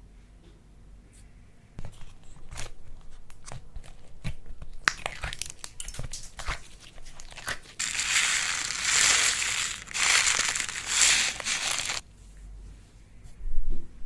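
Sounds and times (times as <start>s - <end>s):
slime crackling and crunching: 7.8s - 12.0s.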